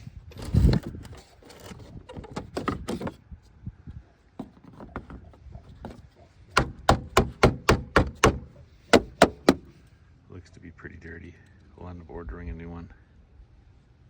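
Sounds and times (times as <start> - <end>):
sharp knocks: 6.6 - 9.7.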